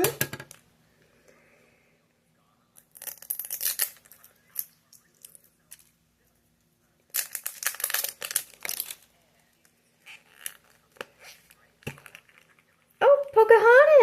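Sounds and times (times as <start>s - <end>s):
packaging tearing and crinkling: 2.9s - 4.2s, 7.1s - 9.1s.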